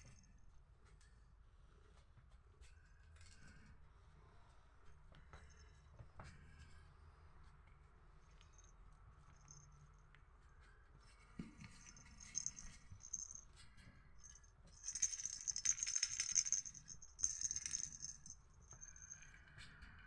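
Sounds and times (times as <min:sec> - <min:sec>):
rattling and jingling: 0:11.8 - 0:13.4, 0:14.2 - 0:19.3.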